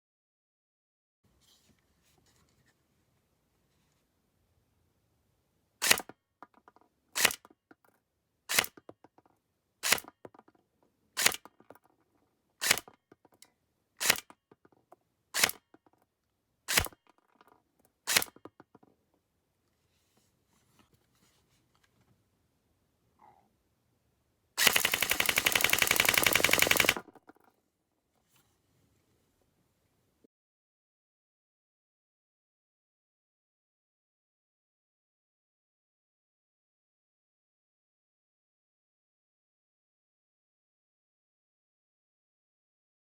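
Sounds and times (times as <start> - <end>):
airsoft gun shots: 5.8 - 6.1, 8.5 - 8.8, 9.8 - 10.1, 12.6 - 13.0, 14.0 - 14.3, 15.4 - 15.6, 16.7 - 17.0, 18.1 - 18.4, 24.6 - 27.1.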